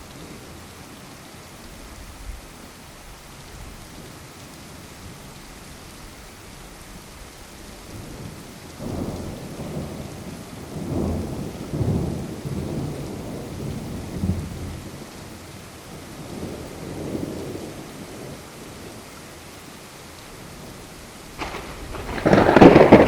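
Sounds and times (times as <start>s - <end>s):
steady rain hiss: 0.0s - 23.0s
rolling thunder: 7.9s - 14.9s, 21.4s - 23.0s.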